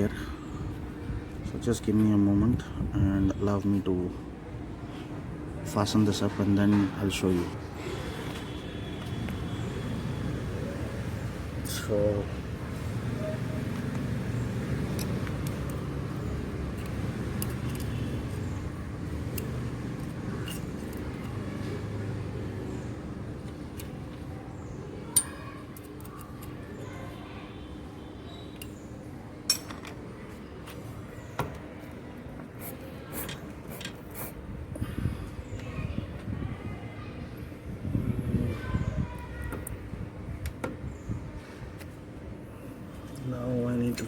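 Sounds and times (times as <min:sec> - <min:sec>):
metal tools clinking: 0:29.5 - 0:30.0.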